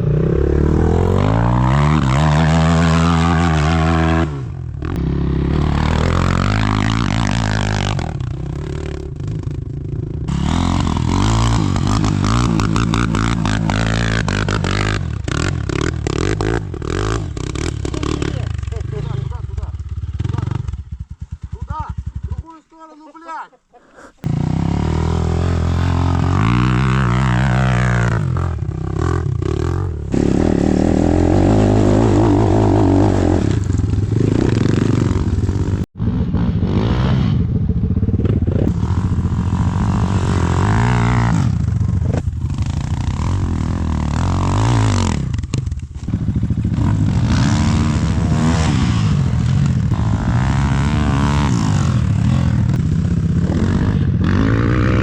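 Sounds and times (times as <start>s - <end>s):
dirt bike engine revving: 0.0s - 22.6s, 24.0s - 55.0s.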